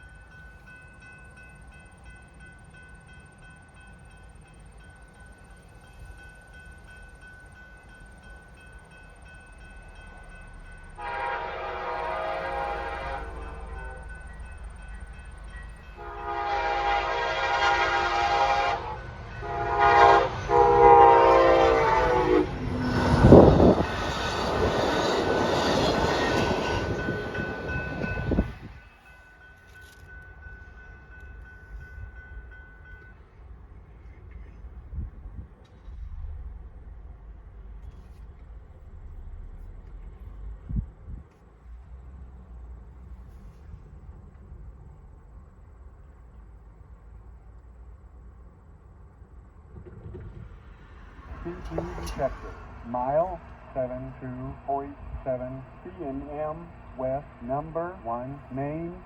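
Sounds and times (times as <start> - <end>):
train wheels rolling on rail: 0.0 - 59.0
train horn blasts: 11.0 - 14.4, 15.9 - 23.9.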